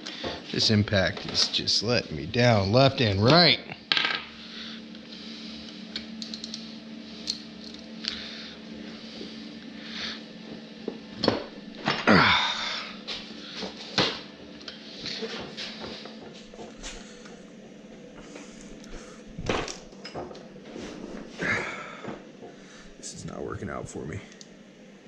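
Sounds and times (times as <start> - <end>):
steady low hum: 0.0 - 25.0
metal tools clinking: 6.2 - 6.6.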